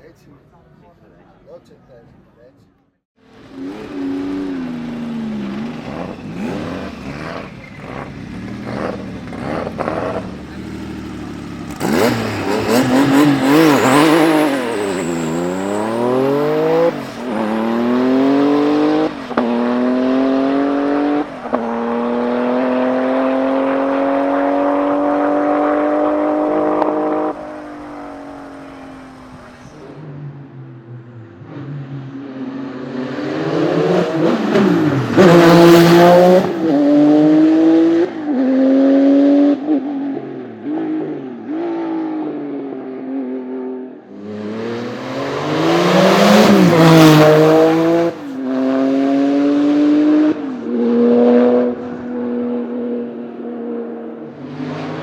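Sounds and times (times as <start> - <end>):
car engine accelerating hard: 3.3 - 55.0.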